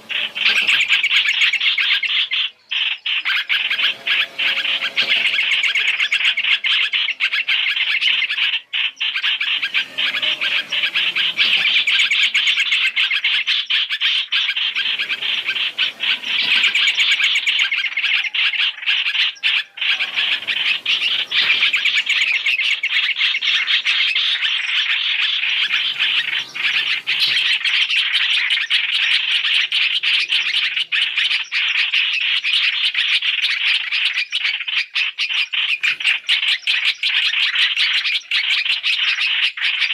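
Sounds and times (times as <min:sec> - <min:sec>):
bulbuls chirping: 0:00.0 - 0:39.9.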